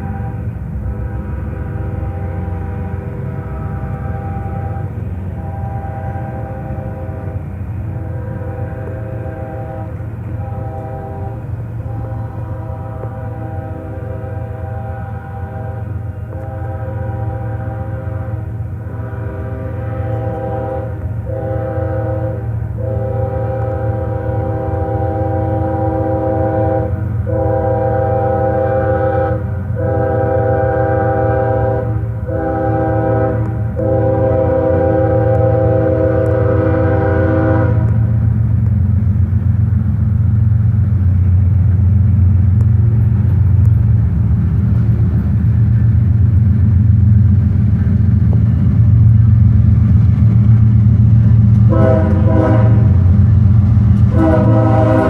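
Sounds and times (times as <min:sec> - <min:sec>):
locomotive air horn blasts: 0:00.0 - 0:38.3, 0:51.6 - 0:55.0
low locomotive rumble: 0:00.0 - 0:55.0.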